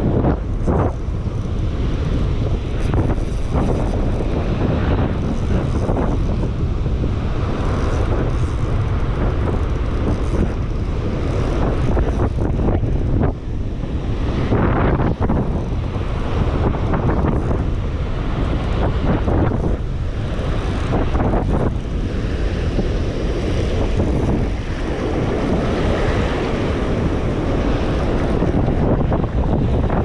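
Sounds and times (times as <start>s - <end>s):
breaking surf: 0.0s - 30.0s
strong wind buffeting microphone: 0.0s - 30.0s.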